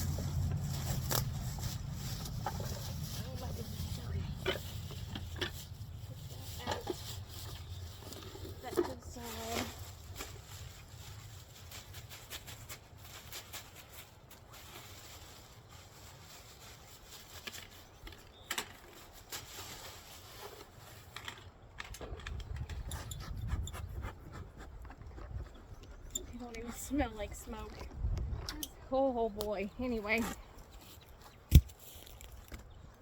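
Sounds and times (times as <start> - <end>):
rustling: 0.0 - 23.1
wind buffeting microphone: 21.9 - 30.2.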